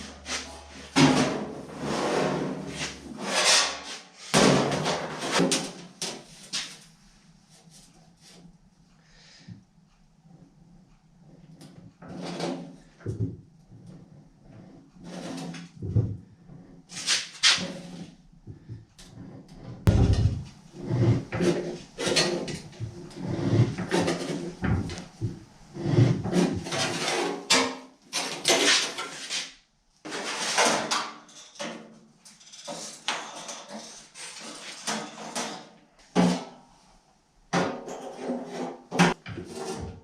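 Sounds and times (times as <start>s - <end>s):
metal scraping: 0.0s - 5.5s, 19.2s - 27.5s
sheet metal knocks and clunks: 19.9s - 25.4s.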